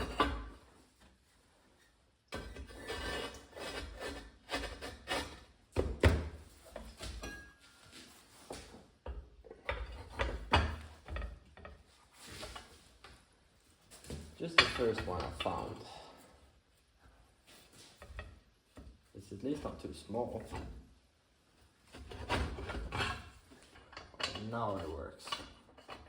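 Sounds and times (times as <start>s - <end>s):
rubbing and scraping firebrick: 2.4s - 5.6s, 21.8s - 26.0s.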